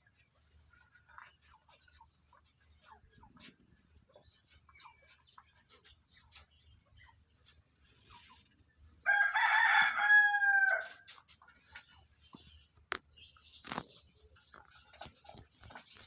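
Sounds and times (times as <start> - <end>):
rooster crowing: 9.0 - 11.1.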